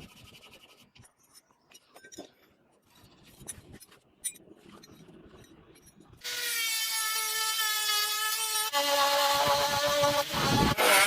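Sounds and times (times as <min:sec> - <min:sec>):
hand scraping and rubbing: 0:00.0 - 0:06.1
small power tool whining: 0:06.2 - 0:11.0.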